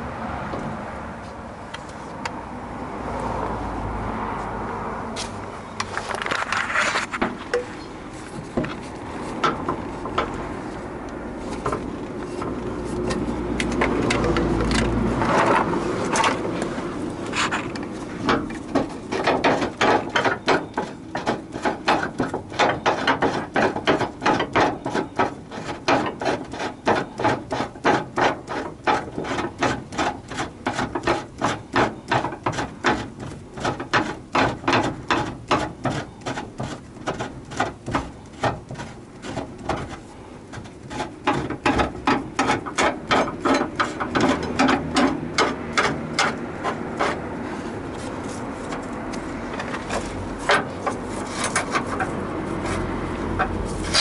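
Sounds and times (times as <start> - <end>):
scraping: 5.2 - 54.0
hand tool rasping strokes: 18.5 - 48.9, 49.8 - 54.0.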